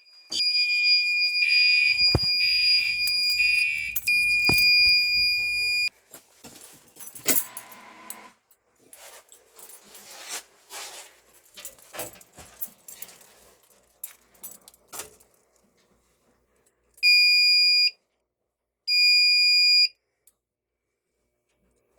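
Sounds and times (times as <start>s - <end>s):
fire alarm high-pitched tone: 0.3s - 5.9s
clicks and handling noises: 1.9s - 5.9s.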